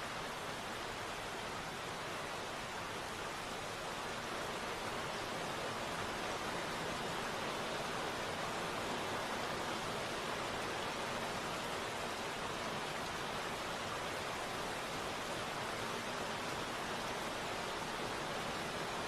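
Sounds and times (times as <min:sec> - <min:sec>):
steady rain hiss: 0:00.0 - 0:19.0.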